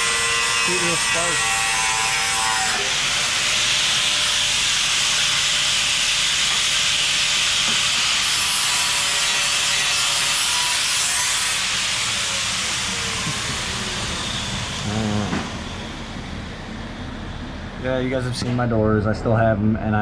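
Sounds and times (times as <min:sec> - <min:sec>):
steady loud hiss: 0:11.6 - 0:18.9.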